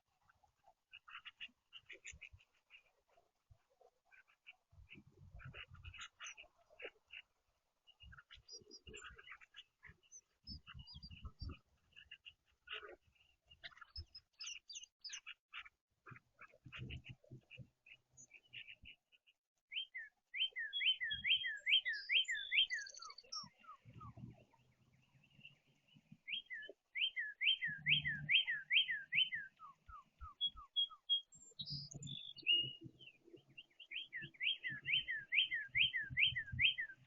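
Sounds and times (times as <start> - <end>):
cardinal singing slurred whistles: 26.3 - 32.8, 34.0 - 37.0.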